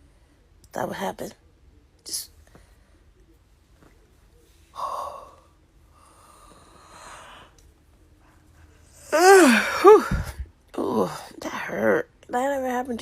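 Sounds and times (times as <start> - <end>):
person yawning: 9.0 - 10.4.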